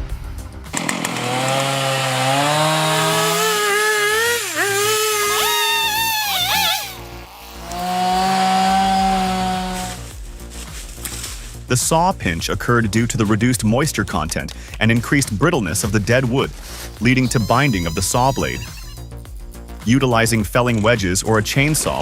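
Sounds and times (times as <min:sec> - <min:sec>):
chainsaw engine revving: 0:00.7 - 0:10.2, 0:16.8 - 0:18.8.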